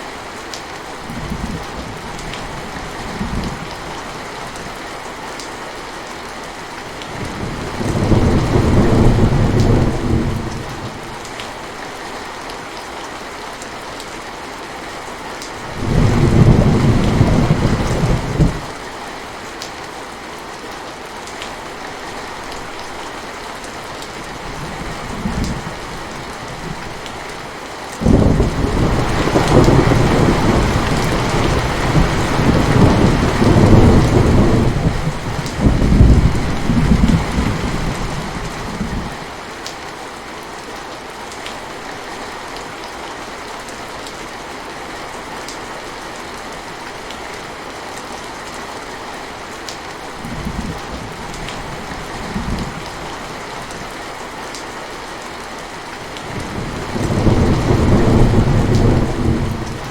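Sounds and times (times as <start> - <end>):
rain falling: 0.0 - 59.9
thunder rumbling: 7.2 - 11.0, 15.7 - 18.7, 28.0 - 39.2, 56.2 - 59.9.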